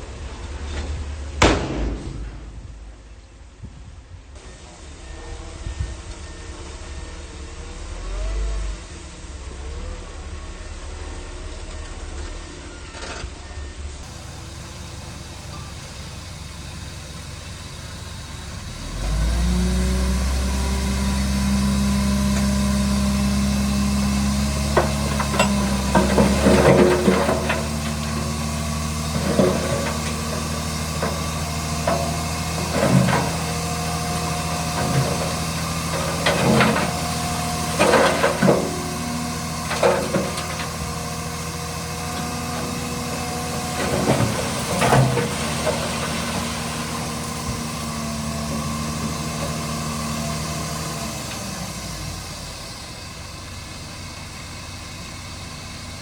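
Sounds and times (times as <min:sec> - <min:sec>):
bulldozer diesel engine running: 0:04.4 - 0:56.0
clanks and knocks: 0:24.6 - 0:41.0, 0:42.1 - 0:47.8.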